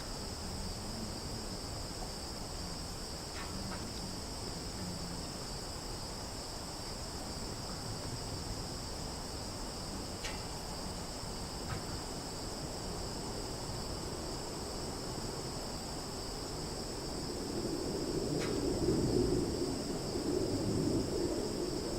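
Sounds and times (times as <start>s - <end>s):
high-pitched insect chorus: 0.0s - 21.9s
faint ticks: 10.2s - 10.5s.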